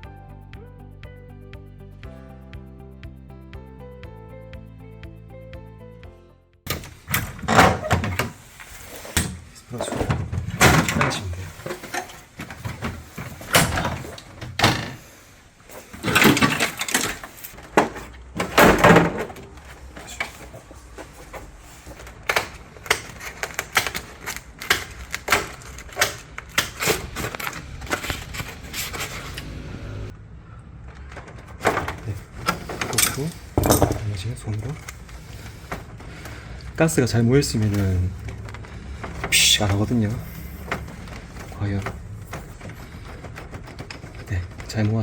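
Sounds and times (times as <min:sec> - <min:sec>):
plastic and metal parts rattling: 0:06.7 - 0:29.4, 0:30.8 - 0:45.0
scraping bursts: 0:19.5 - 0:30.1.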